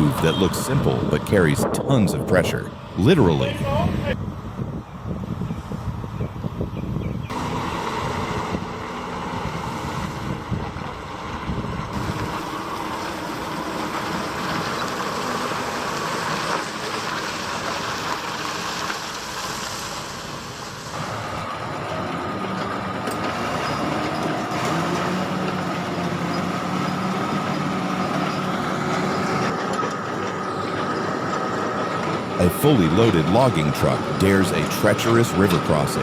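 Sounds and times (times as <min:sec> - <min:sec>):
heavy vehicle engine under load: 0:00.0 - 0:36.0.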